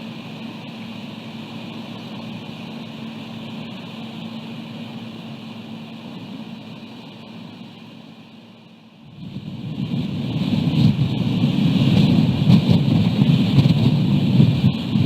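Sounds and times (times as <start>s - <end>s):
constant low hum: 0.0s - 15.0s
wind buffeting microphone: 9.1s - 15.0s.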